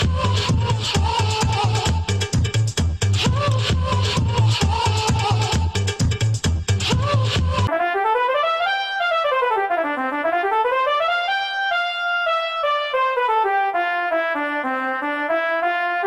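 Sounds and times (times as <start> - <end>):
thumping dance track: 0.0 - 7.7
solo trumpet scales: 7.7 - 16.0.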